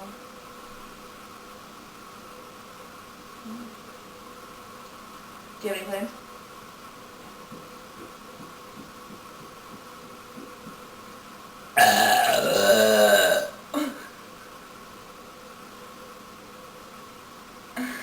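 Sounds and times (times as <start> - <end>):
woman belching: 11.8 - 14.0.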